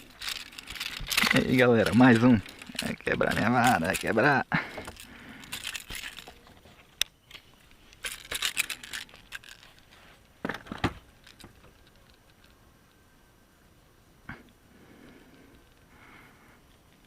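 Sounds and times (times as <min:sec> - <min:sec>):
rustling and rattling: 0:00.0 - 0:12.6.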